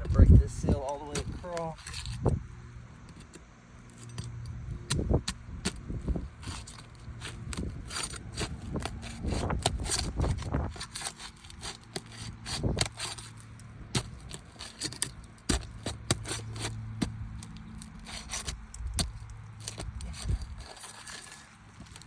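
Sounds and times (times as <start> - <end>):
roof shingles tearing apart: 6.4 - 22.0.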